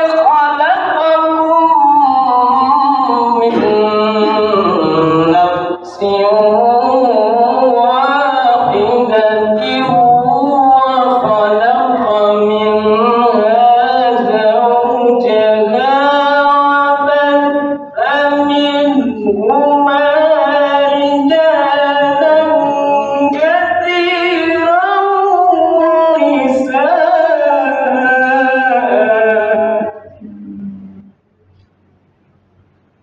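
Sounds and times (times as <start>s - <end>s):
man reciting melodically: 0.0s - 31.1s.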